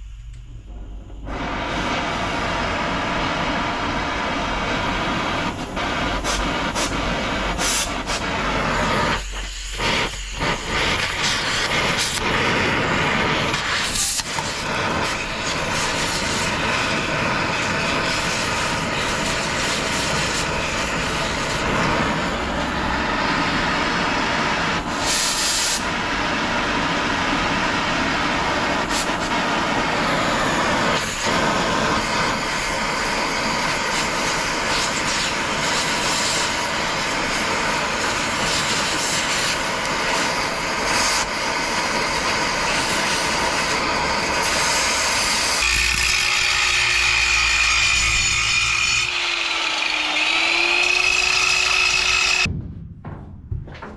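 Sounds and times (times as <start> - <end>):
machine running loudly: 0.0 - 52.5
short high hiss: 1.2 - 26.0.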